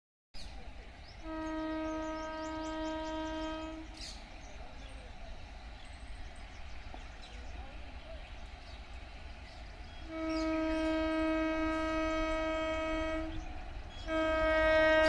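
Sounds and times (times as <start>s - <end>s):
locomotive air horn blast: 1.2s - 4.0s, 10.0s - 15.0s.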